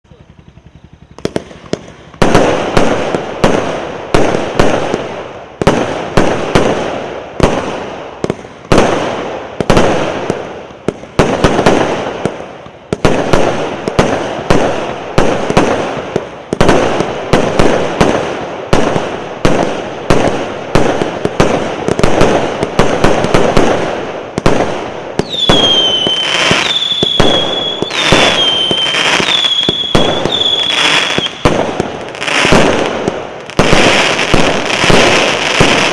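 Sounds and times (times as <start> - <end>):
fireworks bangs: 0.0 - 35.9
fireworks whistles: 0.0 - 35.9.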